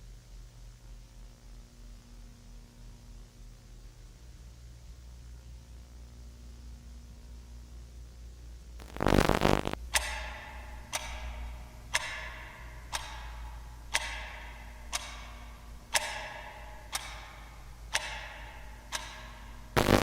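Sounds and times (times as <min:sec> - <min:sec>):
low steady hum: 0:00.0 - 0:20.0
clock ticking: 0:08.9 - 0:20.0.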